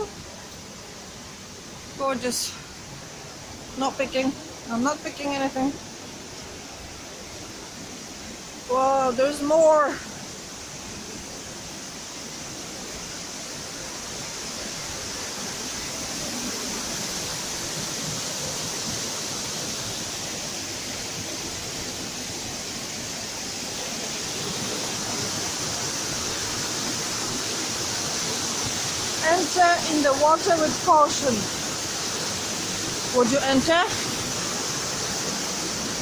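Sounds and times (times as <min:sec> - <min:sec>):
cascading river water: 0:00.0 - 0:36.0.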